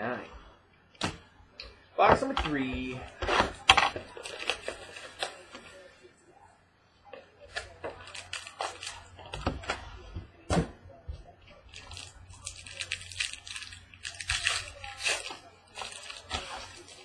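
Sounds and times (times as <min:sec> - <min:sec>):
plastic wrap crinkling and tearing: 0:03.1 - 0:05.9, 0:07.4 - 0:09.4, 0:11.6 - 0:17.0.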